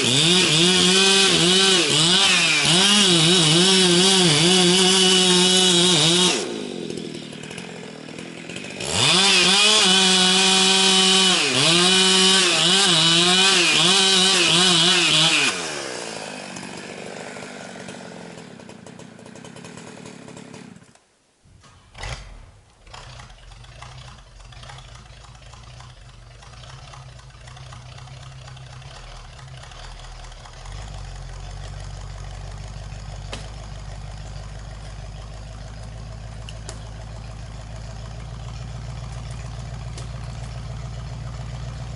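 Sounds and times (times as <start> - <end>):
chainsaw cutting wood: 0.0 - 41.9
diesel engine idling: 22.6 - 41.9.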